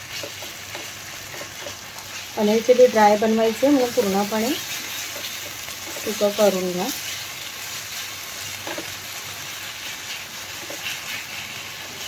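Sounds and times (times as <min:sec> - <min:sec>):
sauce sizzling in a pan: 0:00.0 - 0:12.0.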